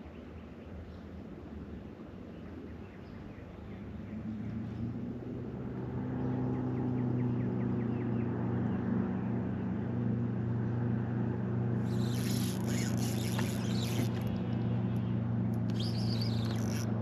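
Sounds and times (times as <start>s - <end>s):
boat motor humming: 5.0s - 17.0s.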